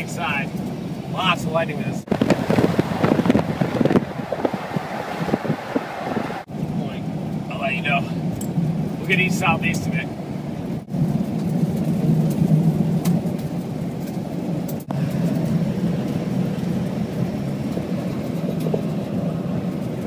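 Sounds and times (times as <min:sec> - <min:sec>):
vehicle engine and road noise: 0:00.0 - 0:20.0.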